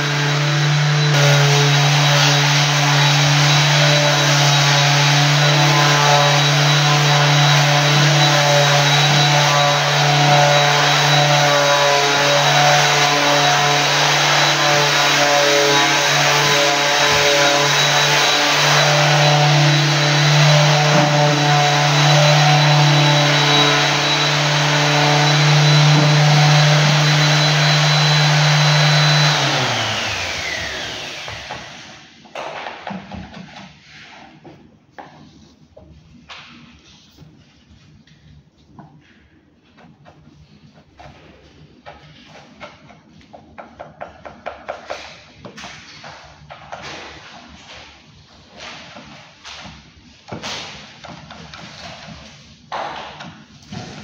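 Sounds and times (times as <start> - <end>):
floor sanding machine running: 0.0 - 32.2, 53.6 - 54.0.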